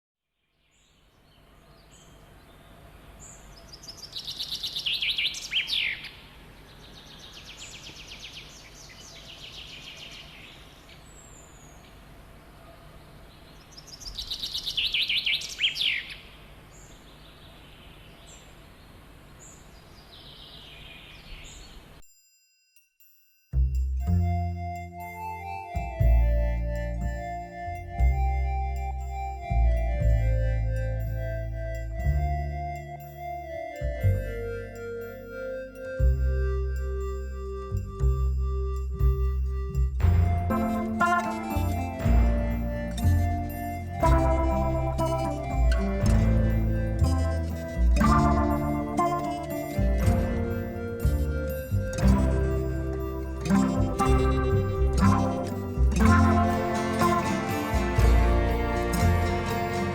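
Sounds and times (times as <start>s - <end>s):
songbird trilling song: 0.5s - 12.0s, 13.3s - 22.0s, 36.0s - 59.5s
instrumental background music: 23.6s - 59.9s
soft trills and high calls: 40.0s - 59.9s.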